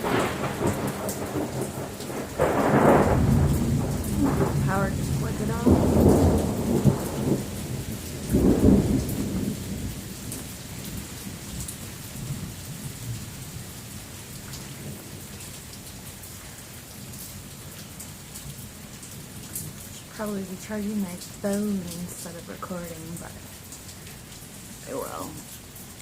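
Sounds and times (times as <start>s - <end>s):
thunder rumbling: 0.0s - 13.7s, 19.3s - 25.6s
steady rain: 0.0s - 26.0s.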